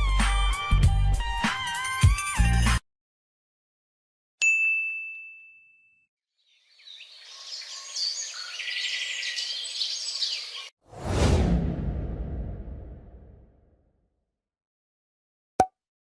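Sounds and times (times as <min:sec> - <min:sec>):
bell ding: 0:04.4 - 0:06.1
birds chirping and trilling: 0:06.4 - 0:10.7.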